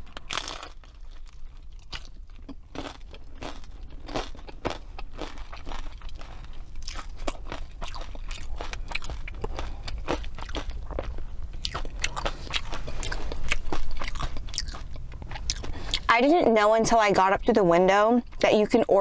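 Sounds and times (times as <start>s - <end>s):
crunchy bites and chewing: 0.0s - 16.1s.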